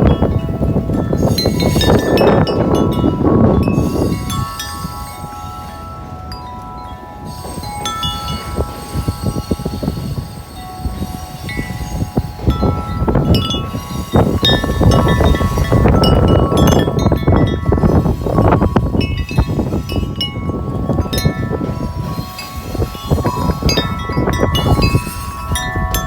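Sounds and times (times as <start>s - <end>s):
wind chime ringing: 0.0s - 26.0s
wind rumbling on microphone: 0.0s - 26.0s.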